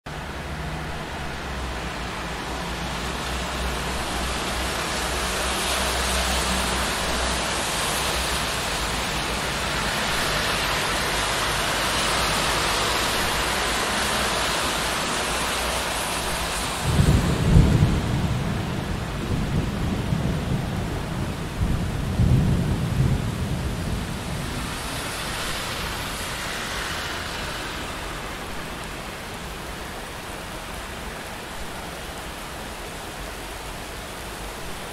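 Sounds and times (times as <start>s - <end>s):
cars passing on wet street: 0.1s - 34.9s
steady rain: 0.1s - 34.9s.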